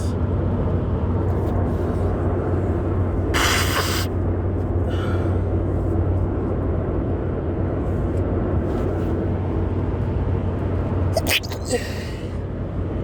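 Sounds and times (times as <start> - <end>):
car road and engine noise: 0.0 - 13.0
short hiss: 3.4 - 4.1.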